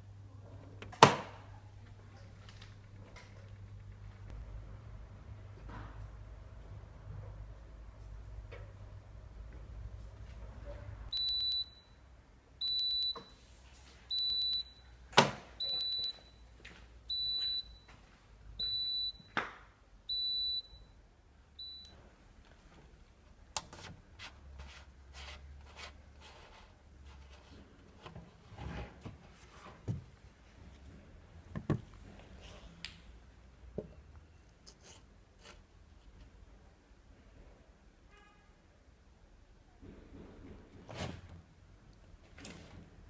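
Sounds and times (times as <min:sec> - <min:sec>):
washing machine high beeps: 0:11.1 - 0:12.0, 0:12.6 - 0:13.4, 0:14.1 - 0:15.0, 0:15.6 - 0:16.5, 0:17.1 - 0:18.0, 0:18.6 - 0:19.3, 0:20.1 - 0:21.0, 0:21.6 - 0:22.0.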